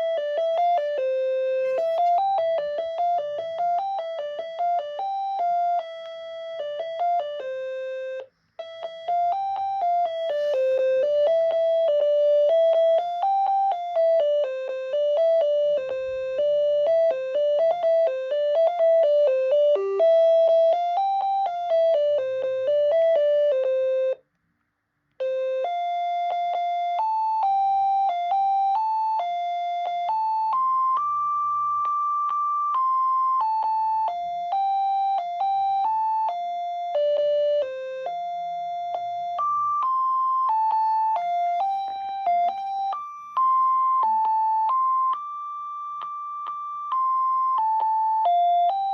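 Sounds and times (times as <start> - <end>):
phone ringtone melody: 0.0 - 24.2, 25.2 - 48.9.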